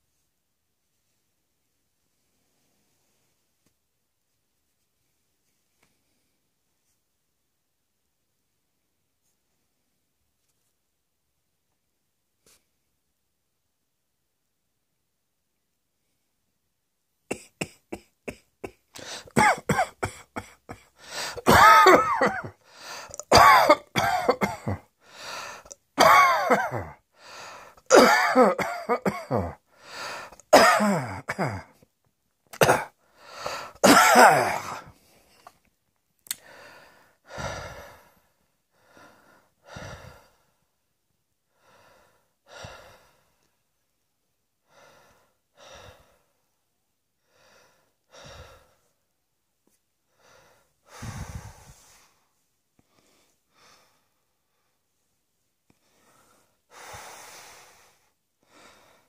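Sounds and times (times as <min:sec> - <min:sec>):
person coughing: 0:17.3 - 0:24.9, 0:26.0 - 0:27.0, 0:27.9 - 0:29.6, 0:30.4 - 0:31.8, 0:32.6 - 0:34.9.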